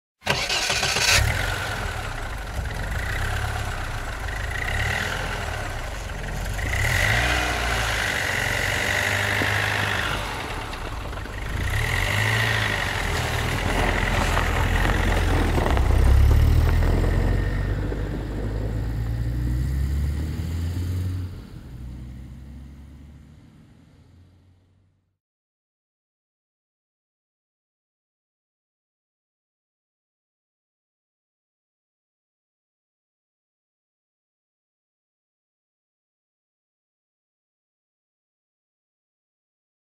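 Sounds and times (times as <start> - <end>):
car engine starting and revving: 0.2 - 24.9.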